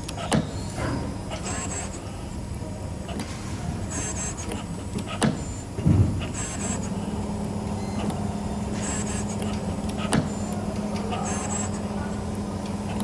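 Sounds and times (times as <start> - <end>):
machine motors whining: 0.0 - 13.0
steady machine hum: 0.0 - 13.0
machine thump: 5.2 - 6.4.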